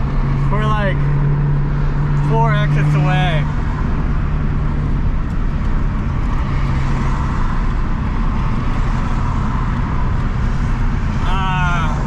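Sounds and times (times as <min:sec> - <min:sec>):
tyre and wind noise in car: 0:03.4 - 0:12.0.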